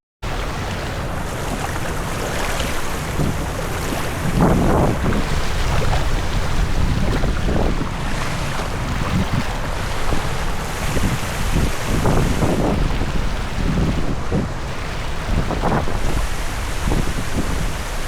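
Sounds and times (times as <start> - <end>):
rushing river water: 0.2 - 18.0
wind buffeting microphone: 0.2 - 18.0.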